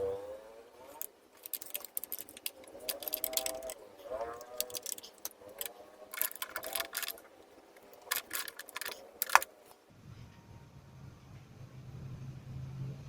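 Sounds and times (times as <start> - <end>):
metallic tool clicks and clatter: 0.9 - 9.6.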